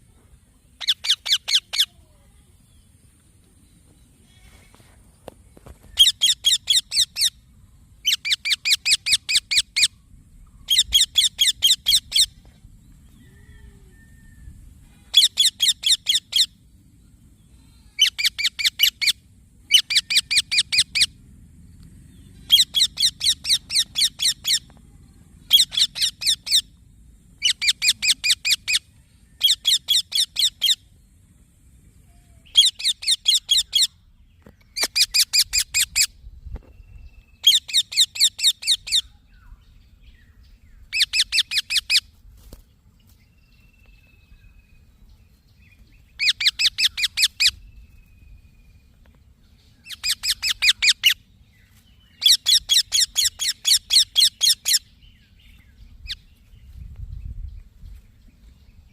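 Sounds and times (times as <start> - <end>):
parakeet chirping: 0.8 - 1.9, 22.5 - 24.6, 25.5 - 26.7, 27.4 - 28.8, 40.9 - 42.0, 46.2 - 47.6, 49.8 - 51.2, 52.2 - 54.9.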